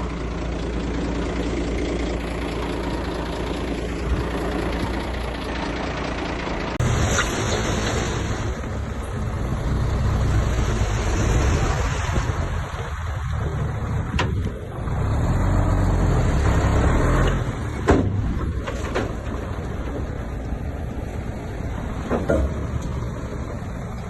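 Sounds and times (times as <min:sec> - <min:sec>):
heavy diesel engine under load: 0:00.0 - 0:24.0.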